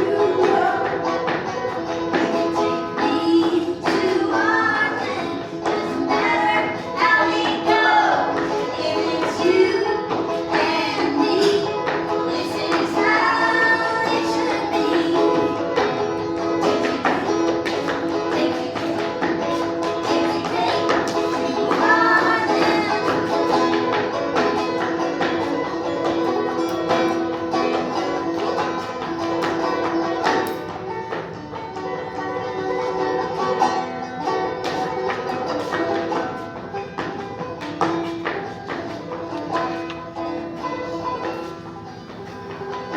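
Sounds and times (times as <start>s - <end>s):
person singing: 0.0s - 1.3s, 2.2s - 24.4s
clawhammer banjo folk tune: 0.0s - 42.9s
footwork taps on dancing board: 34.6s - 40.0s.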